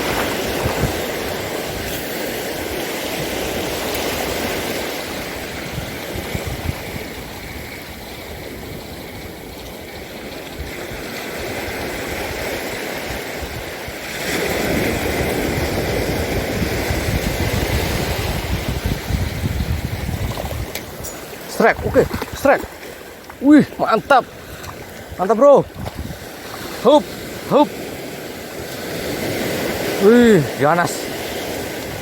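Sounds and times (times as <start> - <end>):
sea waves washing: 0.0 - 32.0.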